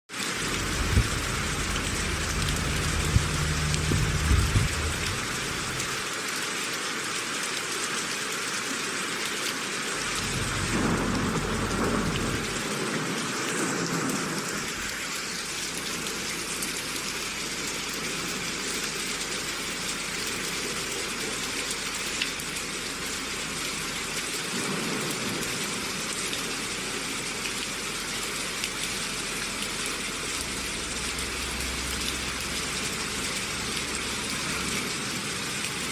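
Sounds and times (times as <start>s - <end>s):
rain falling: 0.1s - 35.9s
low rumbles: 0.4s - 6.0s, 10.0s - 12.7s.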